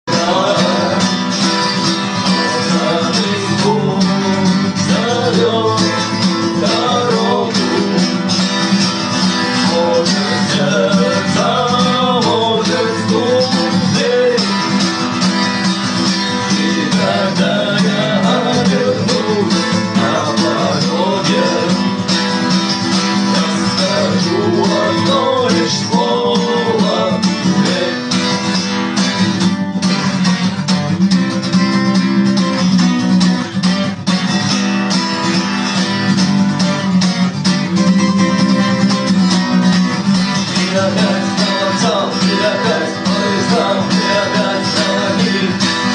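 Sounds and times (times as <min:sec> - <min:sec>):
person singing: 0:00.0 - 0:08.7, 0:09.4 - 0:15.1, 0:16.3 - 0:22.1, 0:23.1 - 0:28.5, 0:40.3 - 0:45.9
acoustic guitar strumming: 0:00.0 - 0:45.9.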